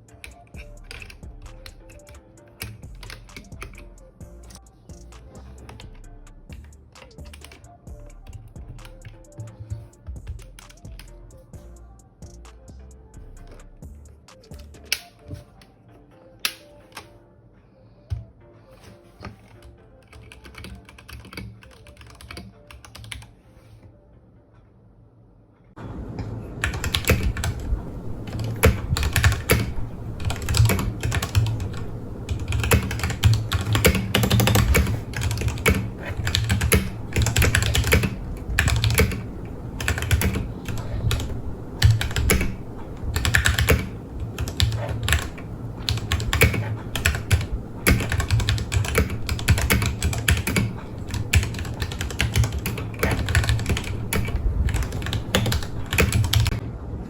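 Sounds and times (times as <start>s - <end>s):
mechanical keyboard typing: 0.0s - 5.9s, 6.5s - 11.2s, 19.6s - 23.3s, 26.6s - 56.6s.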